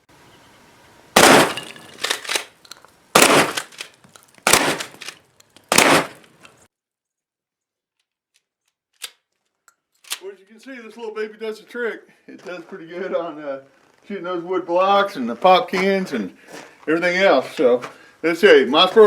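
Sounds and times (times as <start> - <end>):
shotgun shots with echo: 1.2 - 2.1, 3.2 - 3.8, 4.5 - 5.1, 5.7 - 6.2
shotgun pump clacks: 1.2 - 6.6.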